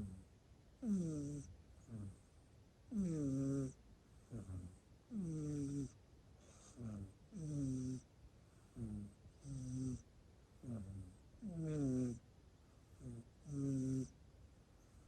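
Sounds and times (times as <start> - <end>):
pet snoring loudly: 0.0 - 0.2, 0.8 - 2.2, 2.9 - 8.1, 8.7 - 10.0, 10.6 - 12.2, 13.0 - 14.1.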